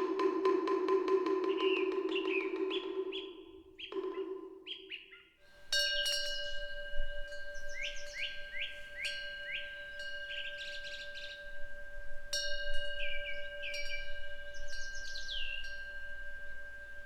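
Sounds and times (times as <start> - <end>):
wind bell ringing: 5.5 - 17.0
small birds chirping: 7.3 - 11.7, 12.6 - 17.0.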